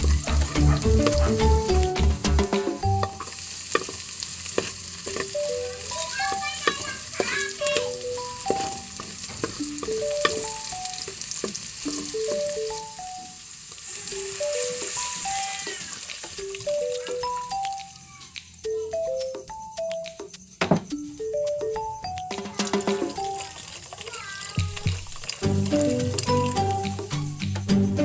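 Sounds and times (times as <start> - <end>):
bass beat: 0.0 - 3.2, 25.4 - 28.0
background music: 0.0 - 3.4, 7.6 - 11.2, 11.9 - 13.4, 14.1 - 23.5, 25.4 - 28.0
utensil clicking against pan: 0.0 - 12.4, 22.4 - 27.1
food sizzling in oil: 0.0 - 18.7, 21.0 - 27.7.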